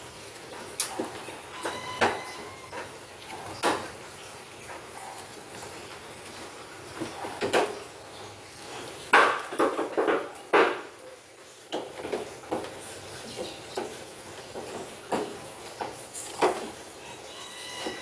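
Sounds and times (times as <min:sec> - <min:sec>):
sharp knocks and clatters: 0:09.1 - 0:11.0.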